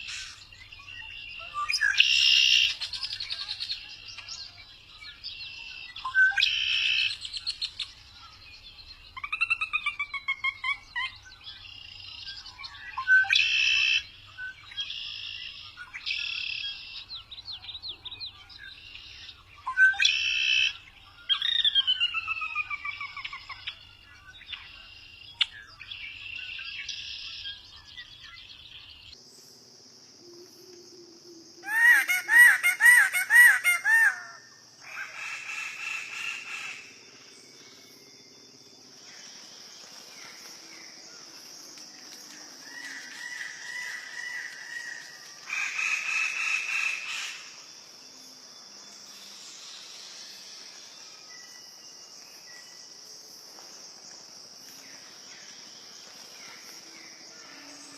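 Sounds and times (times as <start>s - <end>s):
harsh raspy bird calls: 31.6s - 37.0s
birds calling: 31.6s - 47.7s.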